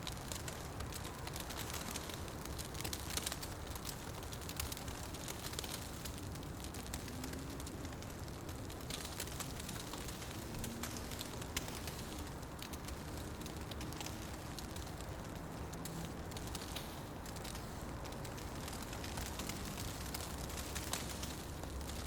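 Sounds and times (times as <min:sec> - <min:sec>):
wood fire crackling and popping: 0:00.0 - 0:22.0.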